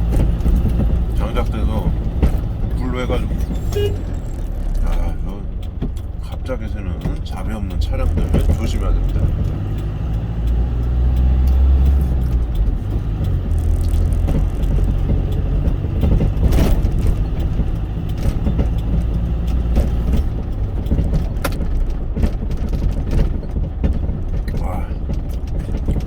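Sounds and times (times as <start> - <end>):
sharp clicks and knocks: 0.0 - 26.0
truck engine and road drone: 0.0 - 26.0.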